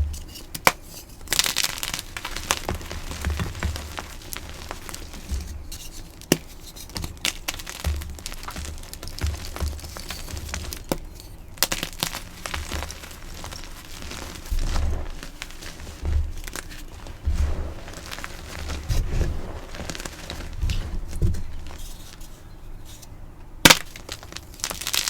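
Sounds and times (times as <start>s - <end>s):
chalk blocks crunching: 0.0s - 25.0s
soft pressing thumps: 12.6s - 23.6s.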